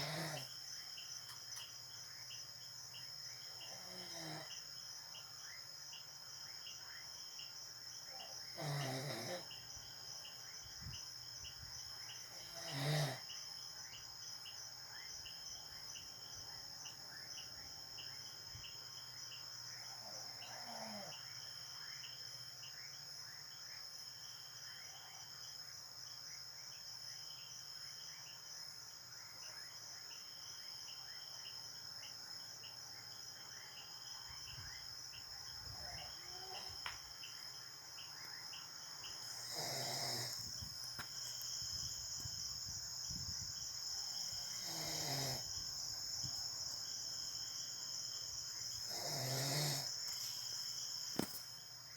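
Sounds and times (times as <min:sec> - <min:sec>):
person snoring: 0:00.0 - 0:00.5, 0:08.6 - 0:09.4, 0:12.4 - 0:13.2, 0:39.3 - 0:40.4, 0:48.8 - 0:49.9
high insect chirping: 0:00.0 - 0:51.9.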